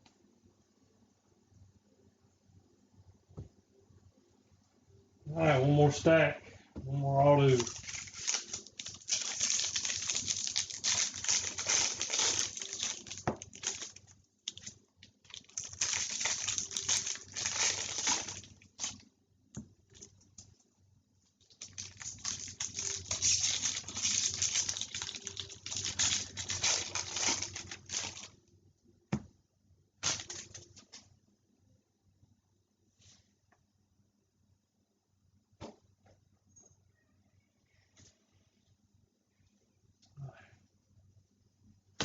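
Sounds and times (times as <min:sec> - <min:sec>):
cards rustling: 0:07.4 - 0:19.0, 0:21.6 - 0:28.3.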